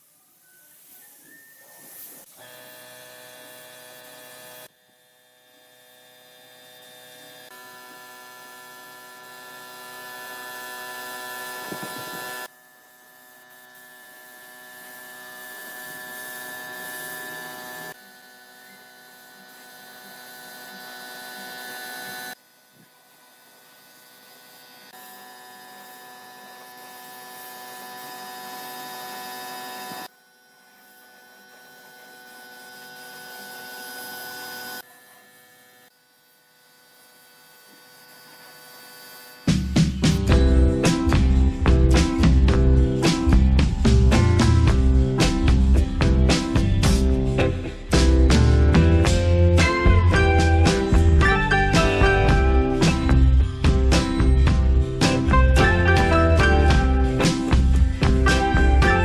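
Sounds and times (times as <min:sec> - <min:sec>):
power tool motor whining: 0:00.3 - 0:22.4, 0:23.3 - 0:39.7.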